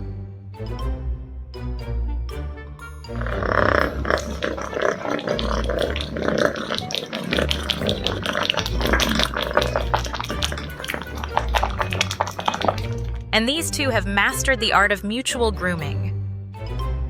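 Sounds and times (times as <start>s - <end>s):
background music with low bass: 0.0s - 4.6s, 7.3s - 17.0s
animal noises with clicks: 3.2s - 13.2s.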